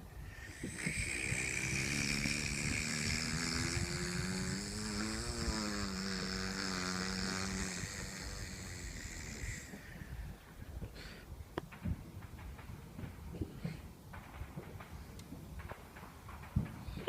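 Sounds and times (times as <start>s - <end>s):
aircraft passing overhead: 0.0s - 10.6s.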